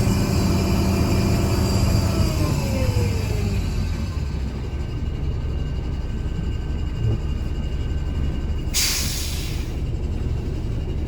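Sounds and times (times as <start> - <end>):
diesel bus engine rumbling: 0.0 - 11.0
compressed air hiss: 8.8 - 9.7.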